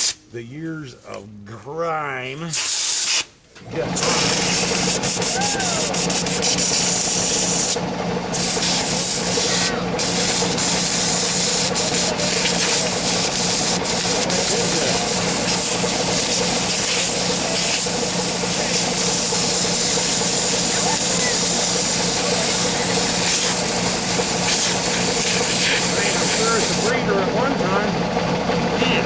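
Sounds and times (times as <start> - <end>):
rough scraping and rubbing: 6.0 - 27.0.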